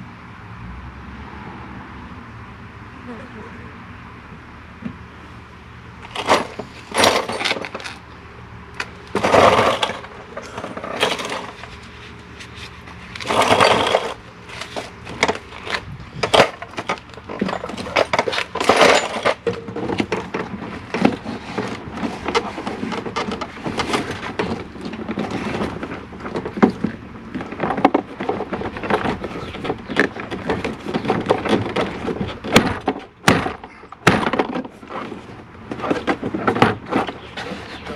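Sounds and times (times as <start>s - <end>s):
plastic scraping: 8.9s - 37.9s.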